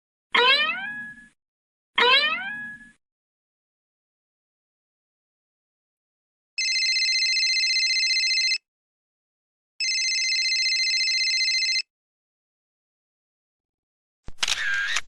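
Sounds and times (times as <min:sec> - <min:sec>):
telephone ringing: 0:06.6 - 0:08.6, 0:09.8 - 0:11.9.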